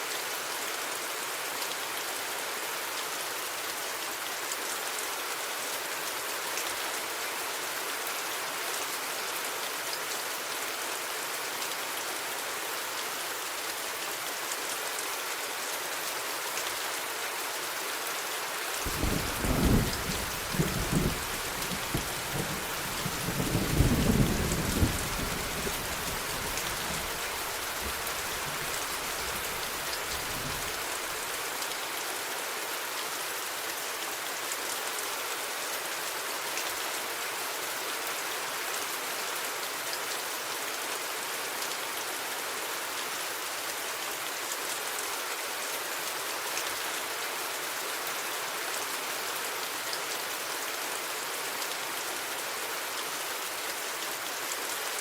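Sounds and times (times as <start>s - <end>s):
steady rain falling: 0.0s - 55.0s
low thunder rumble: 18.9s - 30.8s.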